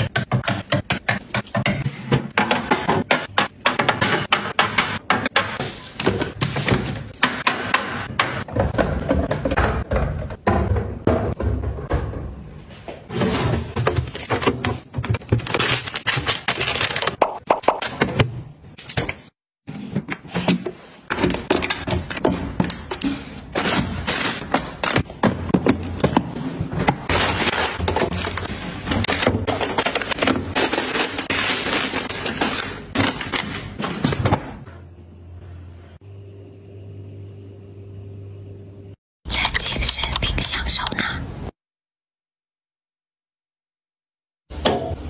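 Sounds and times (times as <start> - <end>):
items knocking as set down: 19.9 - 34.8.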